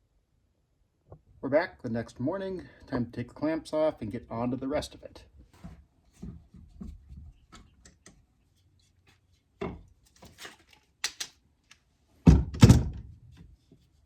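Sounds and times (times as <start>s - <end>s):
clamps clicking and knocking: 9.6s - 11.8s.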